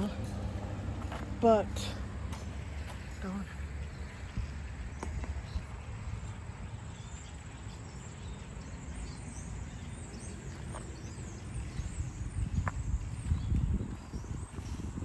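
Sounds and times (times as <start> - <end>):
low outdoor rumble: 0.0 - 15.0
small birds chirping: 0.0 - 15.0.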